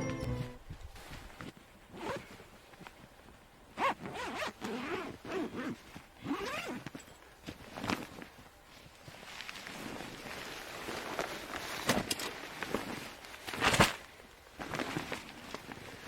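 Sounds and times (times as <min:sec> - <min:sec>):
zipper pulled: 0:01.9 - 0:02.3, 0:03.8 - 0:06.9.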